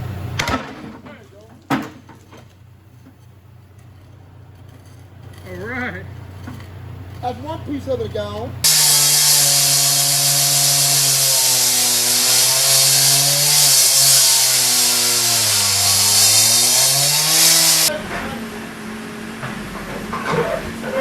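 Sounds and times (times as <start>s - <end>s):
power saw cutting: 8.6s - 18.0s.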